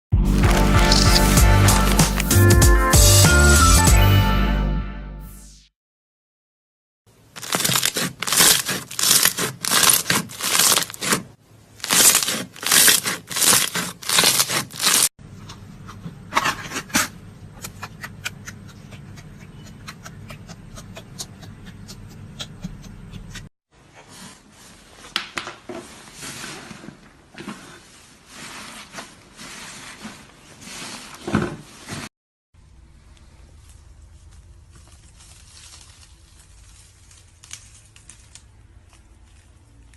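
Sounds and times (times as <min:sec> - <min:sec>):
slime squishing by hand: 0:07.4 - 0:15.1.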